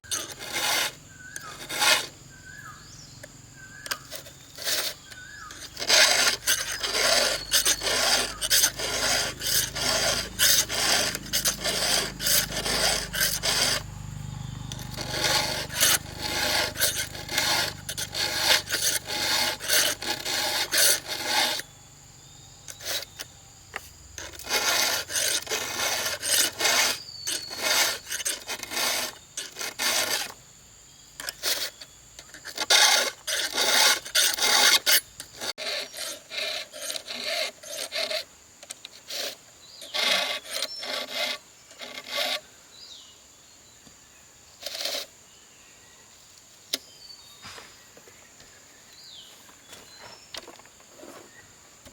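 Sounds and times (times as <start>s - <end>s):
wood rasping by hand: 0.0s - 2.6s, 3.8s - 21.7s, 22.7s - 30.4s, 31.2s - 42.4s.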